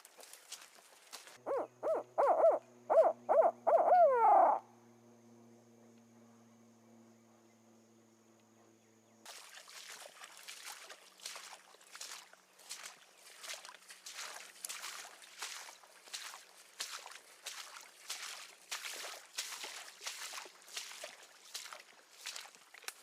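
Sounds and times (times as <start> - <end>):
owl hooting: 1.4 - 4.6.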